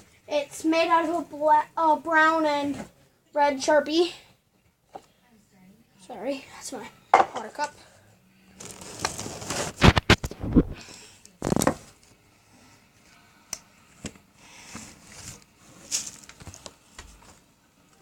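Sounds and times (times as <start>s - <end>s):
handling rustles: 14.8s - 17.5s.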